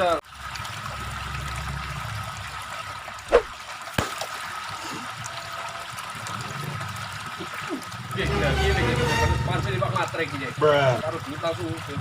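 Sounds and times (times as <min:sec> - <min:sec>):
water trickling: 0:00.0 - 0:12.0
sharp knock or splash: 0:03.3 - 0:04.4.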